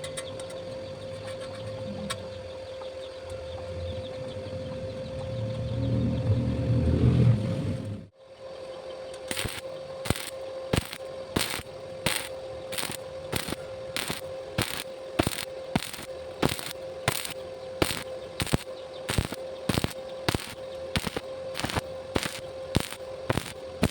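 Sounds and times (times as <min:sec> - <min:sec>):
steady hum: 0:00.0 - 0:23.9
welding arc bursts: 0:09.3 - 0:23.9.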